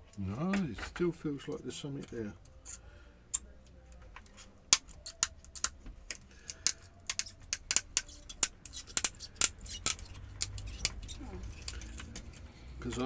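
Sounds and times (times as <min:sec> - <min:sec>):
clicks and snaps of laptop parts: 0:02.0 - 0:12.4.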